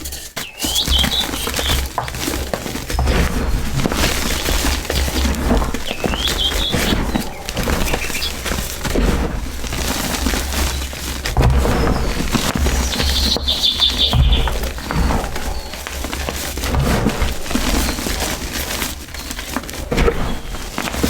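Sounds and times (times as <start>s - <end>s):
bird calling: 0.4s - 3.2s, 3.8s - 9.0s, 9.6s - 16.4s.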